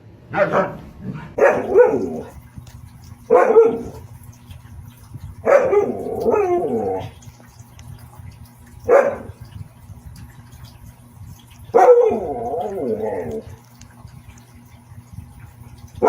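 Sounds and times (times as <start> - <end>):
dog barking: 0.3 - 2.4, 3.3 - 4.0, 5.4 - 6.8, 8.8 - 9.4, 11.7 - 13.4
dog wavering howl: 5.5 - 7.2, 11.8 - 13.6.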